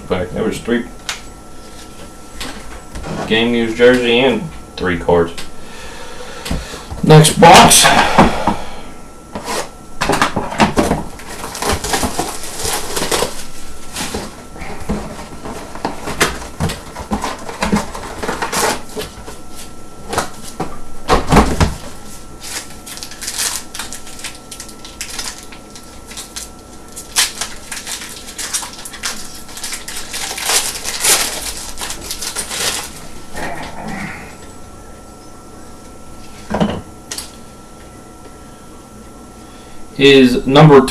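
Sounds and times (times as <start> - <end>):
wrappers crinkling and tearing: 10.8 - 20.6, 21.6 - 33.8
loud ripping of packaging: 11.0 - 14.4, 15.1 - 19.4, 21.4 - 33.2.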